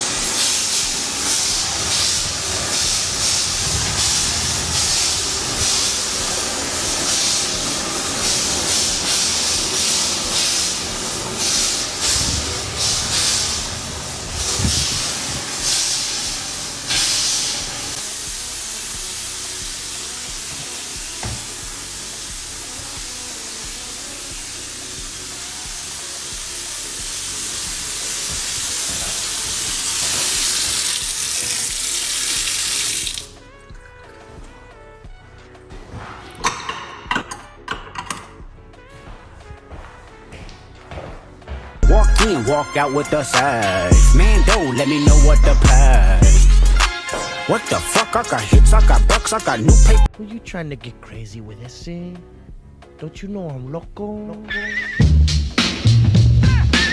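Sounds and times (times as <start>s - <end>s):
loud hissing: 0.0s - 33.4s, 41.8s - 50.1s.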